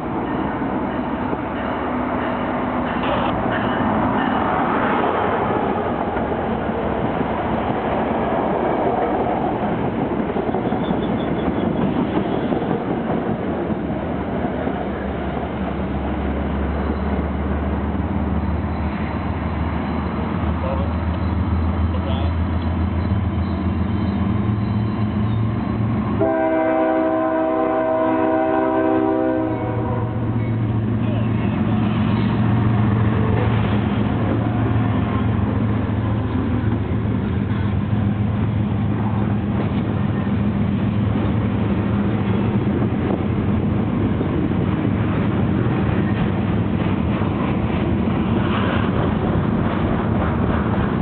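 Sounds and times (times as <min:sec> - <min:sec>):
diesel locomotive rumble: 0:00.0 - 0:51.0
locomotive air horn chord: 0:26.2 - 0:30.2.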